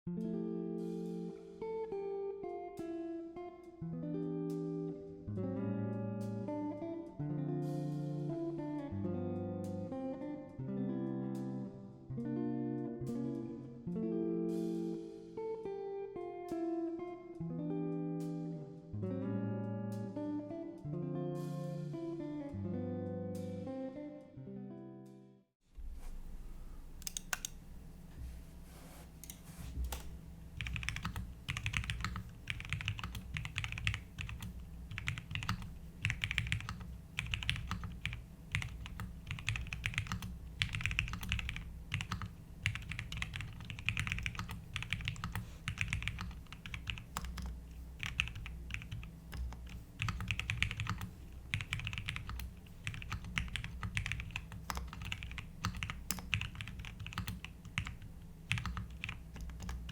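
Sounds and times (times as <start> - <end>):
mechanical keyboard typing: 27.0 - 27.6, 29.2 - 59.9.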